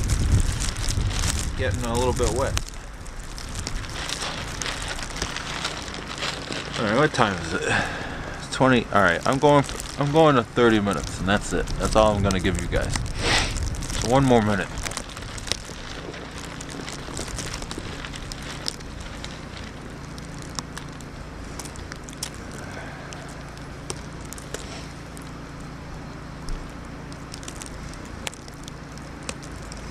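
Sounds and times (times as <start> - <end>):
wind-like storm noise: 0.0 - 25.8
faint low hum: 0.0 - 29.9
light ticks and crackles: 0.0 - 29.9.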